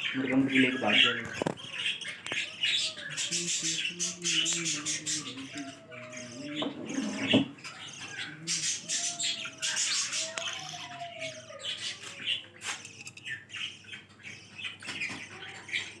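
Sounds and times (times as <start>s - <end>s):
budgerigars chirping and squawking: 0.0s - 16.0s.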